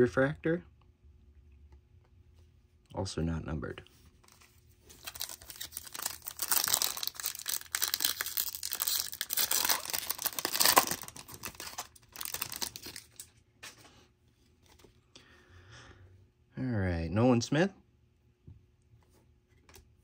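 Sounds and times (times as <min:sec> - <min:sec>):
foil wrapper tearing and crinkling: 0:04.9 - 0:13.3.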